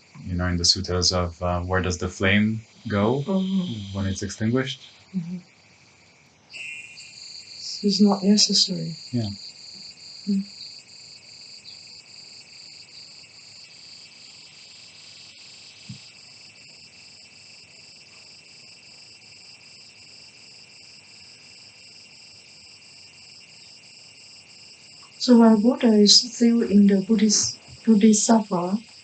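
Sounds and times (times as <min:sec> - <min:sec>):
insects chirping trill: 0:00.0 - 0:29.0
brief murmur: 0:00.2 - 0:05.4.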